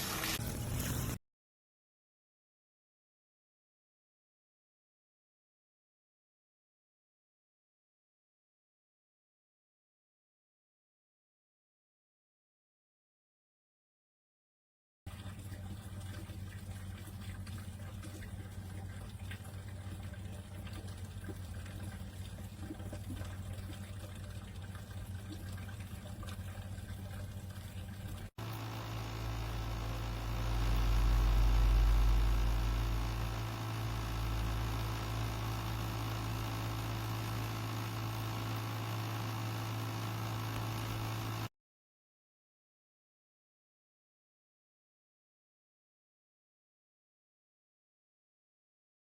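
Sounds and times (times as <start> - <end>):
moving water: 0.0 - 1.2, 15.1 - 37.2
pump electric hum: 0.0 - 1.2, 15.1 - 41.5
low rumble: 29.2 - 35.4.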